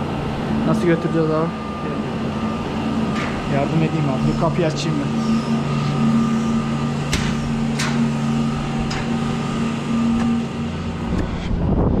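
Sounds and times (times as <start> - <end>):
milking machinery humming: 0.0 - 11.4
sharp clicks or knocks: 7.1 - 8.1.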